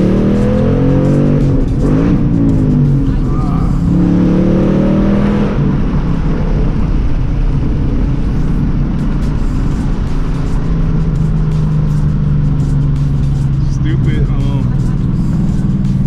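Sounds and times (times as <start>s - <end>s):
car engine rumbling while driving: 0.0s - 16.0s.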